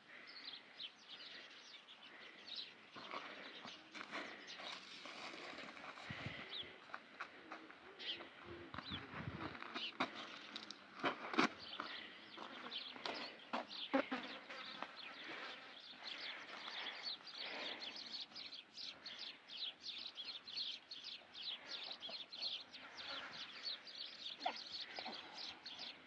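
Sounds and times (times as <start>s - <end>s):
birds chirping: 0.0s - 26.0s.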